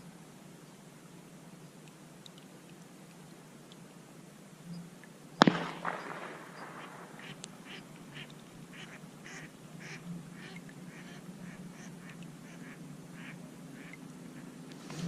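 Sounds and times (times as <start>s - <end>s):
low steady hum: 0.0s - 15.0s
waterfowl calling: 5.4s - 15.0s.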